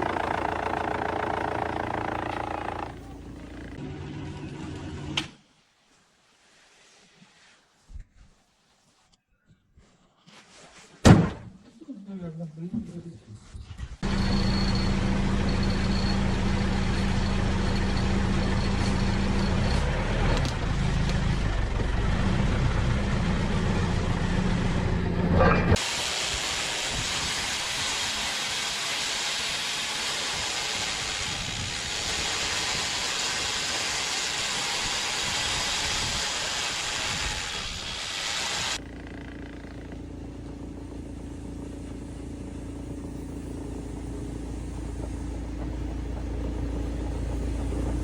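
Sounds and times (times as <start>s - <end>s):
woodworking machine humming: 0.0s - 3.9s, 26.6s - 48.0s
loud steady hissing: 25.8s - 39.6s.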